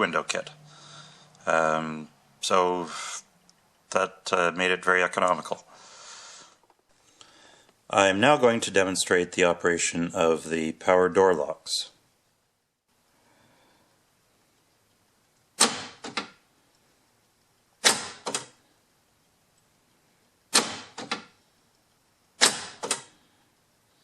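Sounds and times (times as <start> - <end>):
door lock actuator clacking: 17.8 - 18.5, 20.5 - 21.3, 22.4 - 23.1.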